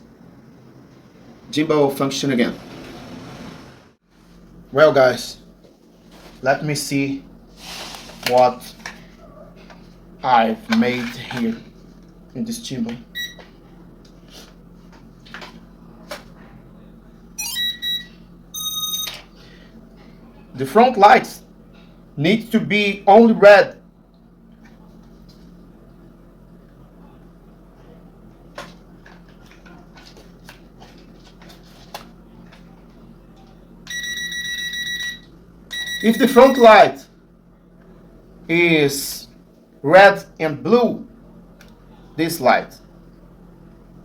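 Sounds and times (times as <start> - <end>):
short electronic beeps: 17.4 - 19.2, 33.9 - 36.8.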